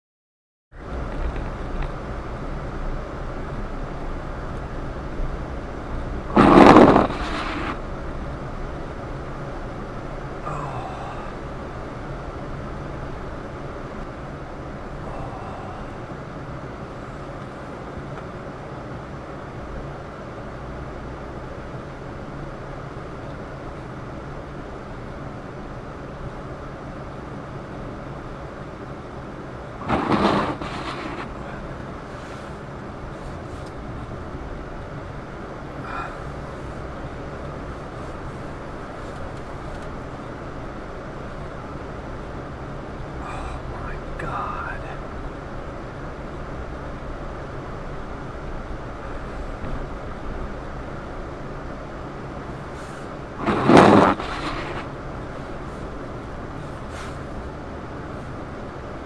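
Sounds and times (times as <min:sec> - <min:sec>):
car road and engine noise: 0:00.7 - 0:59.0
loud rush: 0:06.3 - 0:07.8, 0:29.8 - 0:31.7, 0:53.4 - 0:54.9
short loud noise burst: 0:06.3 - 0:07.8, 0:29.8 - 0:31.3, 0:53.4 - 0:54.9.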